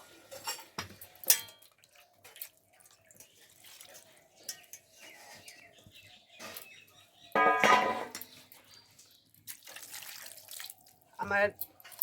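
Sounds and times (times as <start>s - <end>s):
faint water drips: 1.0s - 5.2s, 8.5s - 12.0s
water pouring into a pot: 9.4s - 11.1s.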